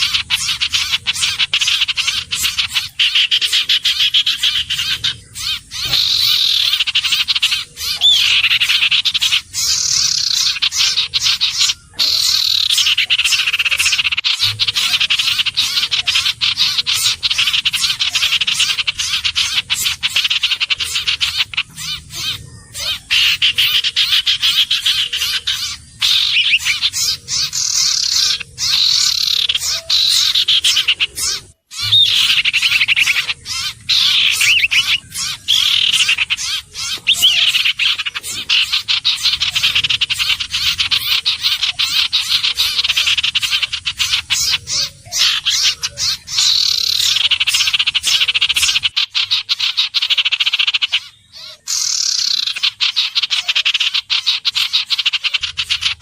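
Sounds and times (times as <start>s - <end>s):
bird trilling: 0.0s - 56.0s.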